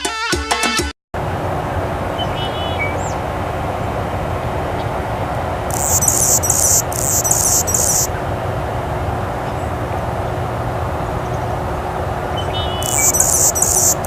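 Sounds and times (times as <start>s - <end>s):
steady background noise: 1.2s - 14.0s
bird calling in rapid notes: 2.2s - 3.2s, 5.7s - 8.2s, 12.4s - 14.0s.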